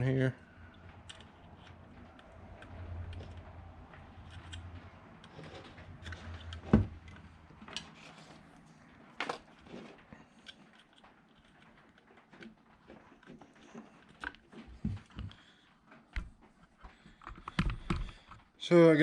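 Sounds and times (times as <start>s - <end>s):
wires and connectors rattling: 0.0s - 18.5s.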